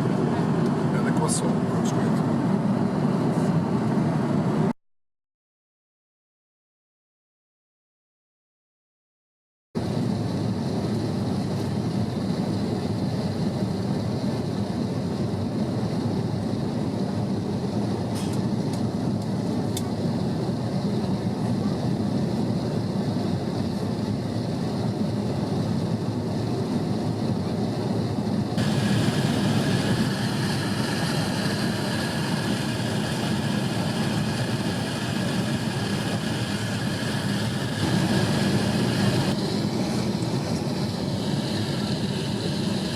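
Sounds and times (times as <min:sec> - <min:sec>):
jetliner engine and airflow rush: 0:00.0 - 0:04.8, 0:09.8 - 0:42.9.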